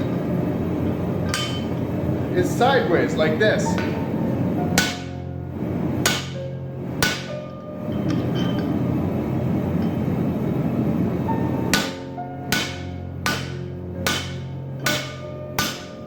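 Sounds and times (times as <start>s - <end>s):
hammer striking metal ringing: 1.3s - 1.8s, 4.8s - 5.2s, 6.0s - 6.4s, 7.0s - 8.8s, 11.7s - 16.0s.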